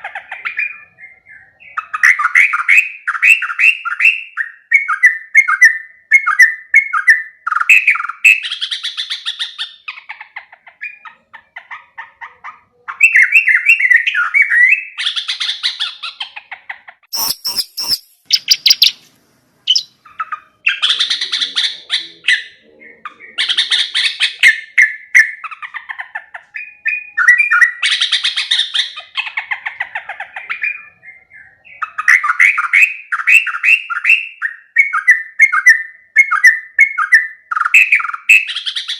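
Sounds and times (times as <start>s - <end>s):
bulbul singing chattering phrases: 17.1s - 19.1s, 19.7s - 32.4s.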